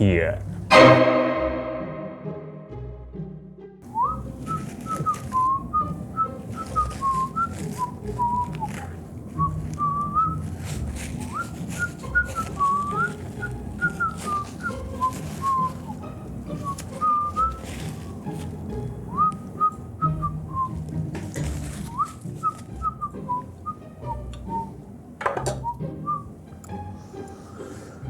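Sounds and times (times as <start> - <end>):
person whistling: 3.9 - 17.6, 19.1 - 20.8, 21.8 - 24.8, 25.5 - 26.3.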